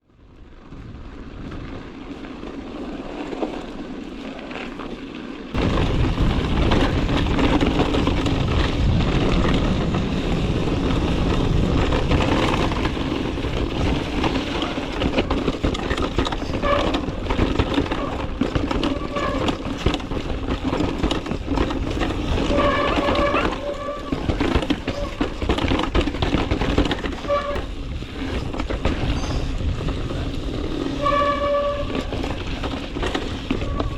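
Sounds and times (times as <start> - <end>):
bike rattling: 0.1 - 33.9
tyres on dirt: 0.5 - 33.9
wind buffeting microphone: 5.5 - 33.9
short tonal squeaks: 22.3 - 25.4, 27.1 - 27.8, 30.9 - 32.4.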